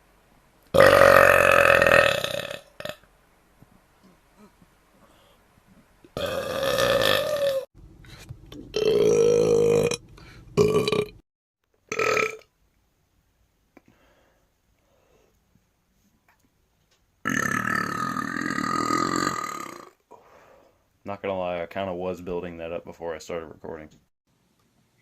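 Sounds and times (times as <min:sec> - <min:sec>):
person burping: 0:00.8 - 0:03.0, 0:06.2 - 0:07.7, 0:08.7 - 0:10.0, 0:10.6 - 0:11.2, 0:11.9 - 0:12.4, 0:17.2 - 0:20.0.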